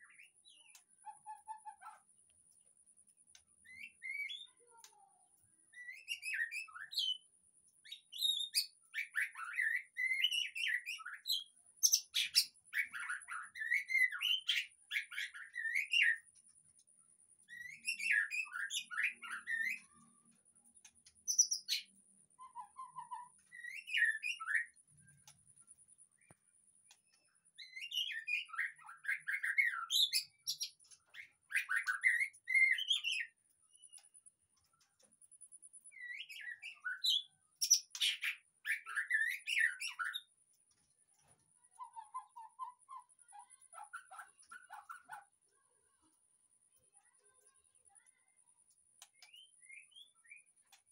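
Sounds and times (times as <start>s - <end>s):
bird singing whistled phrases: 3.6s - 4.6s, 5.7s - 7.2s, 7.9s - 16.2s, 17.5s - 20.0s, 21.3s - 24.8s, 27.6s - 33.4s, 35.9s - 40.3s, 49.2s - 50.5s.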